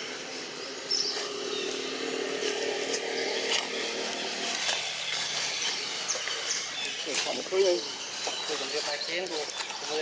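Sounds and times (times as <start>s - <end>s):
small engine droning: 0.0s - 6.5s.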